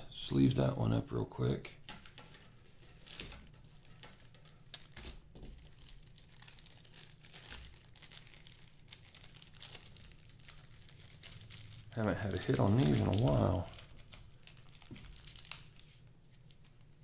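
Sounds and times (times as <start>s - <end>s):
plastic sleeve crinkling: 1.8s - 17.0s.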